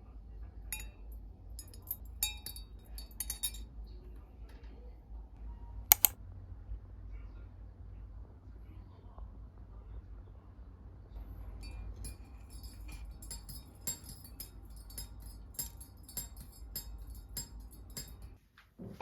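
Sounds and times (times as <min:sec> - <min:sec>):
glass kitchenware clinking: 0:01.6 - 0:03.6, 0:11.6 - 0:18.3.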